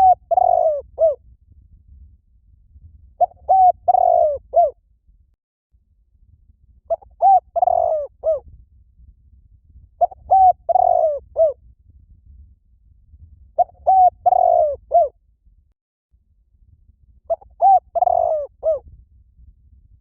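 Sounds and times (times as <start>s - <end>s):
dove cooing: 0.0s - 1.2s, 3.2s - 4.8s, 6.9s - 8.4s, 10.0s - 11.6s, 13.6s - 15.1s, 17.3s - 18.8s.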